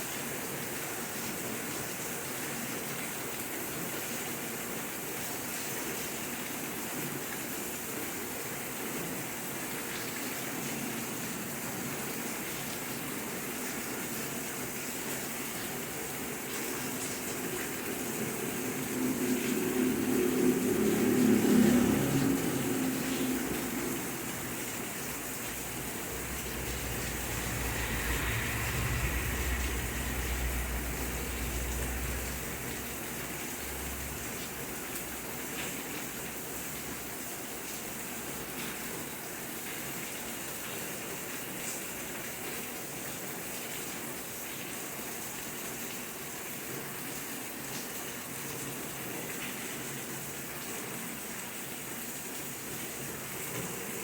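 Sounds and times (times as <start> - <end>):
steady rain: 0.0 - 54.0
low rumble: 16.8 - 34.6.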